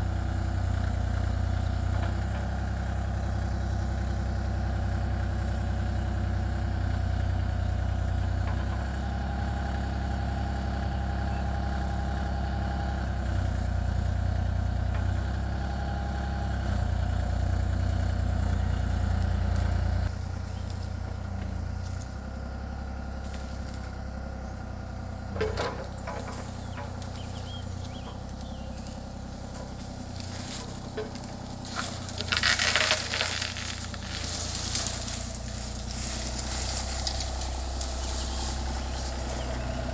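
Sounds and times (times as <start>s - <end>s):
excavator diesel engine running: 0.0s - 39.9s
cracks and crunches: 30.1s - 38.2s.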